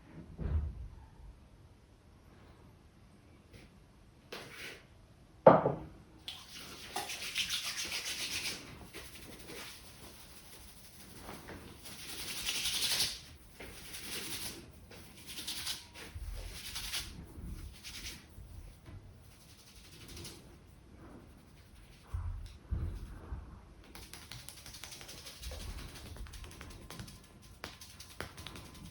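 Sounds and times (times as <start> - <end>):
hands rubbing hair: 6.3 - 28.9.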